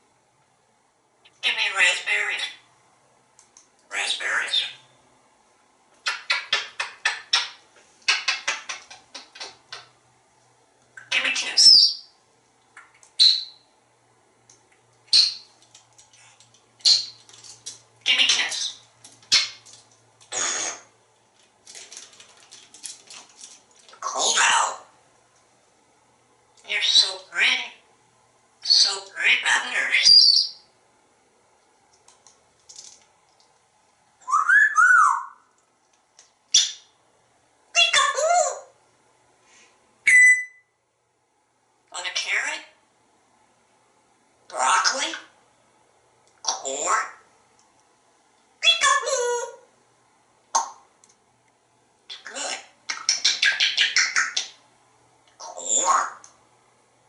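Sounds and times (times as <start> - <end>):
parrot mimicking human word: 1.4 - 2.6, 3.9 - 4.8, 11.0 - 11.8, 18.0 - 19.5, 24.0 - 24.9, 26.6 - 27.8, 28.6 - 30.4, 37.7 - 38.7, 41.9 - 42.8, 44.5 - 45.3, 46.4 - 47.2, 48.6 - 49.7, 52.1 - 54.5, 55.4 - 56.2
parrot squawk: 1.4 - 2.6, 3.9 - 4.8, 6.0 - 9.6, 11.0 - 12.0, 18.1 - 19.6, 20.3 - 20.9, 24.0 - 24.9, 28.6 - 30.6, 44.5 - 45.3, 46.5 - 47.2, 52.1 - 54.5, 55.4 - 56.2
parrot whistling: 34.2 - 35.4, 40.0 - 40.7.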